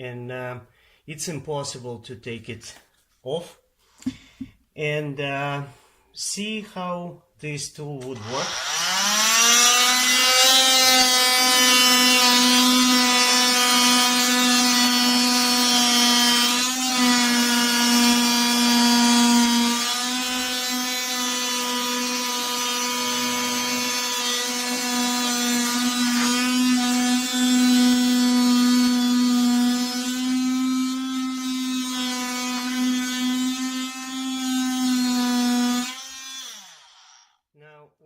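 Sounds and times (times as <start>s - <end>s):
oscillating tool cutting wood: 8.2s - 37.2s.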